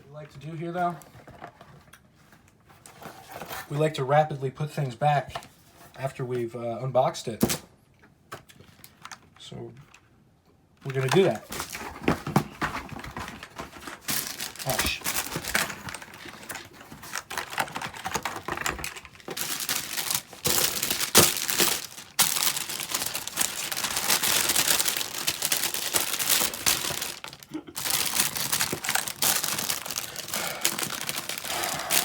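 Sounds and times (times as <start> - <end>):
packaging crinkling and rustling: 8.4 - 10.0, 10.8 - 32.0.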